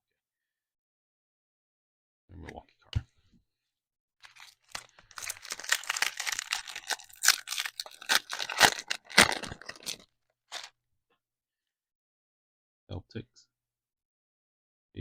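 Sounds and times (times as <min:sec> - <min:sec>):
plastic wrapper crinkling and tearing: 0:04.2 - 0:10.7.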